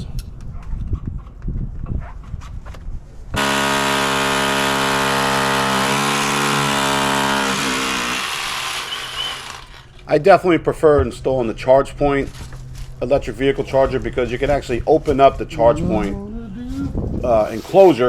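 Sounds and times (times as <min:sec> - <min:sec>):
power tool motor whining: 0:03.4 - 0:10.0
low rumbles: 0:10.4 - 0:17.6.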